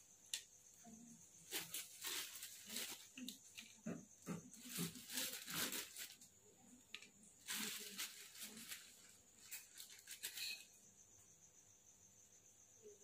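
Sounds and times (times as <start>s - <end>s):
rustling and scraping in a wok: 0.8s - 11.1s.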